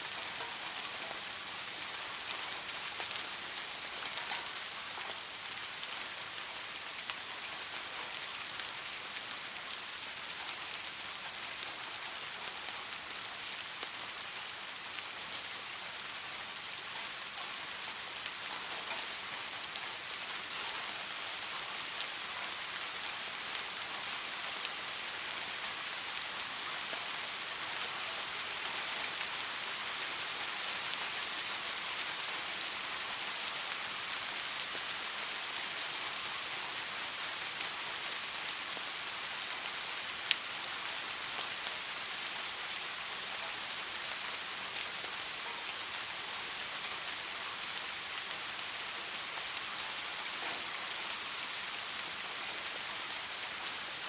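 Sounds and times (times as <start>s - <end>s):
soft rain falling: 0.0s - 54.0s
raindrop ticks: 0.1s - 6.2s.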